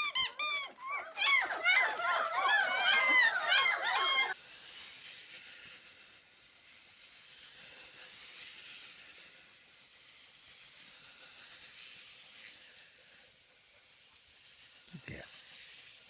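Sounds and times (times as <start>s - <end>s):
faint steady hiss: 4.4s - 16.0s.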